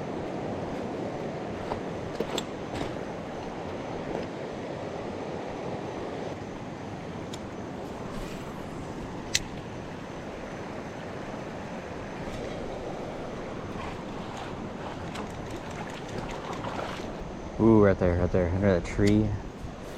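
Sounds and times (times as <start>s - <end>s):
river water rushing over shoals: 9.8s - 17.5s.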